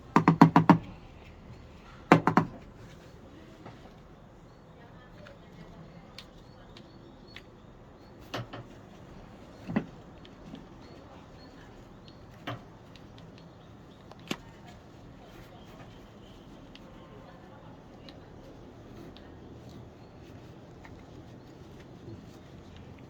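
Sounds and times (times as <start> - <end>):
plastic parts clicking and knocking: 0.0 - 1.0, 2.1 - 2.7, 9.6 - 10.0.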